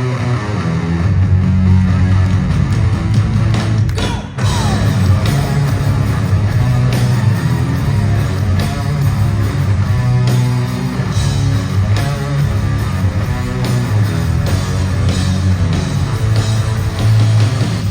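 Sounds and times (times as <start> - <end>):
hard rock band playing loudly: 0.0 - 17.9.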